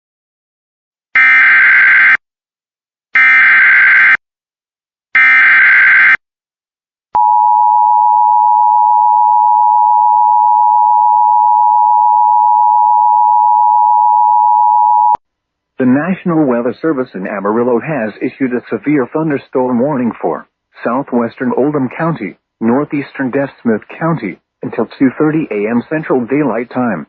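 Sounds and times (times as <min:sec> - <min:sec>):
steady attention tone: 0:07.2 - 0:15.2.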